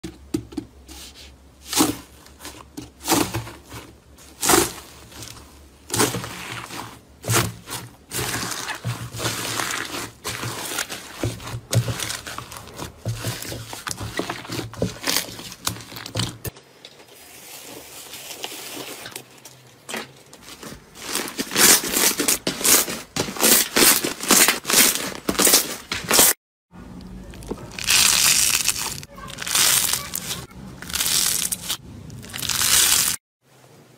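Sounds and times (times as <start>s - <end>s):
slime crackling and popping: 27.4s - 33.2s.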